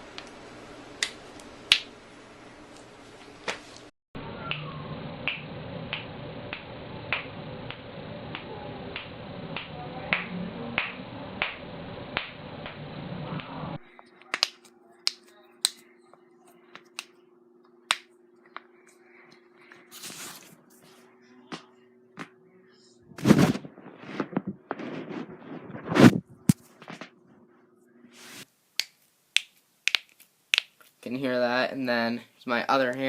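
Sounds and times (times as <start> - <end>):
low steady hum: 0.0 - 28.4
knuckles cracking: 28.8 - 30.9.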